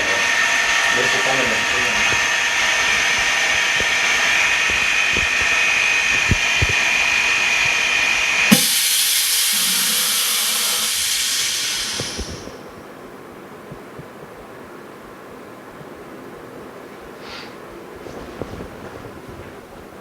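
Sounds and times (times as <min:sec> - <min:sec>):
machine whirring and hissing: 0:00.0 - 0:12.8
thin high whine: 0:00.0 - 0:13.0.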